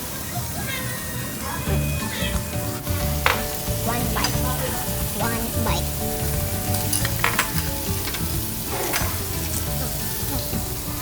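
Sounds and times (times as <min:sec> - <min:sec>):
meat sizzling on a grill: 0:00.0 - 0:11.0.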